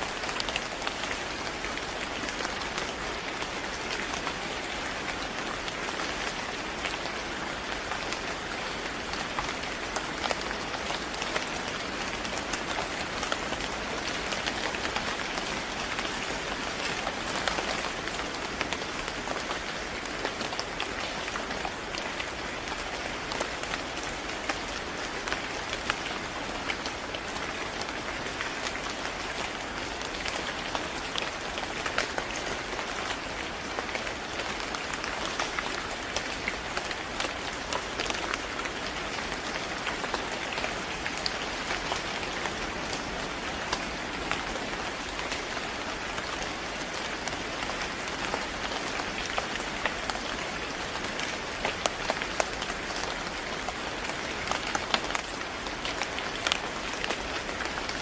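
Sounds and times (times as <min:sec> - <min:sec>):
steady rain falling: 0:00.0 - 0:58.0.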